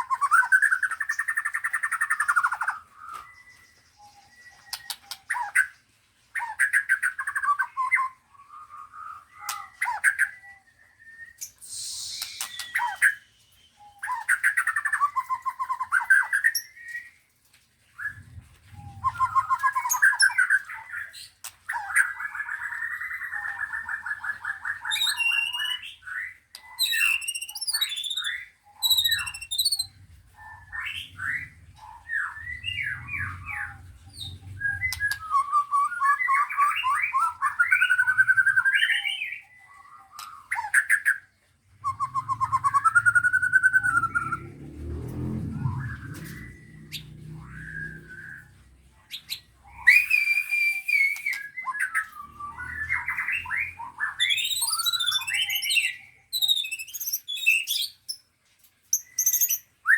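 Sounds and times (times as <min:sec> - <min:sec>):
songbirds singing: 0:00.0 - 0:59.9
faint low hum: 0:28.8 - 0:38.6, 0:41.5 - 0:50.0.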